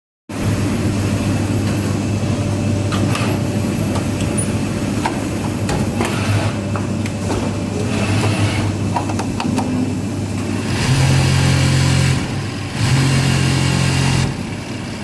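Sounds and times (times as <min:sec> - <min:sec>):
sewing machine humming: 0:03.1 - 0:06.8, 0:07.6 - 0:08.9, 0:09.7 - 0:15.0.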